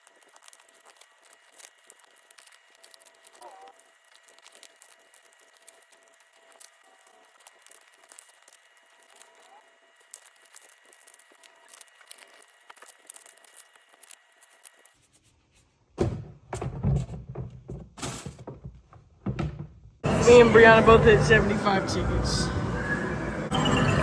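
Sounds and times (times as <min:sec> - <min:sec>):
card packs rustling and crinkling: 0:00.0 - 0:15.1
loud thumps and clatter: 0:16.0 - 0:20.0.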